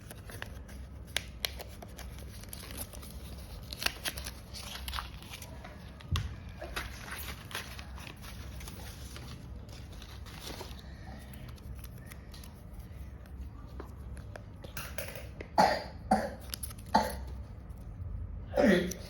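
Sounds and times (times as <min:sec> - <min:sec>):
paper rustling: 0:00.0 - 0:14.4.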